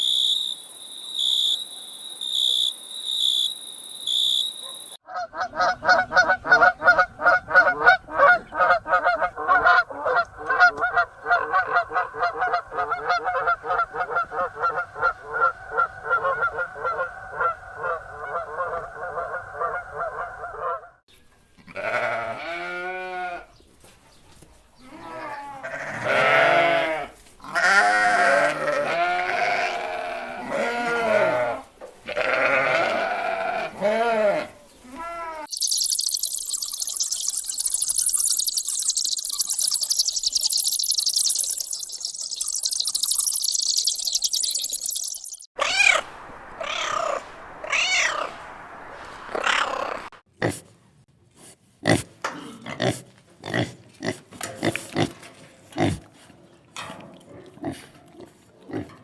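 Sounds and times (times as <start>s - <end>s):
goat bleating: 21.6s - 23.5s, 24.8s - 35.5s.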